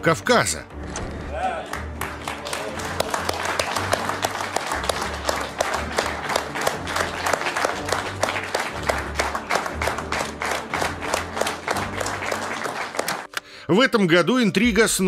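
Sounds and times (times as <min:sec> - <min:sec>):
audience applauding: 0:01.3 - 0:13.3.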